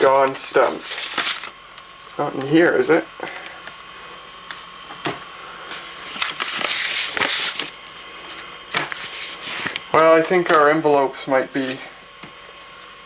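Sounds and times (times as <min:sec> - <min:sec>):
rustling and shuffling: 0:00.0 - 0:02.1, 0:05.6 - 0:11.9.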